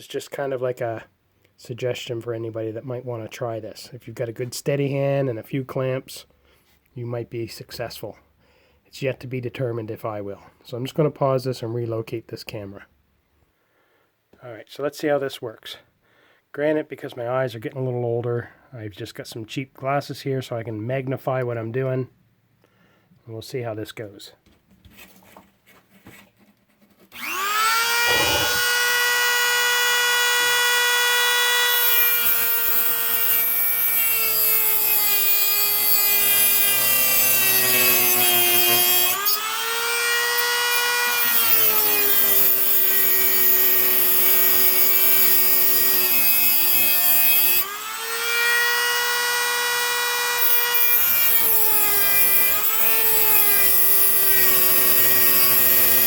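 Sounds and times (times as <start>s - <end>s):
rotary tool grinding metal: 27.2s - 56.0s.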